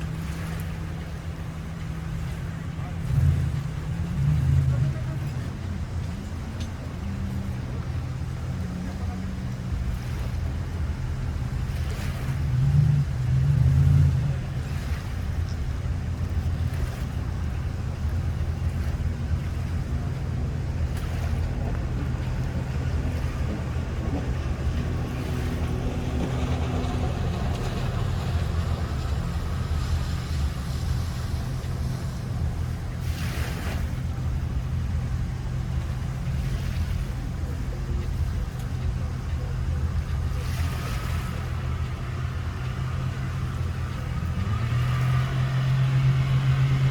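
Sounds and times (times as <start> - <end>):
motorboat engine running: 0.0 - 46.9.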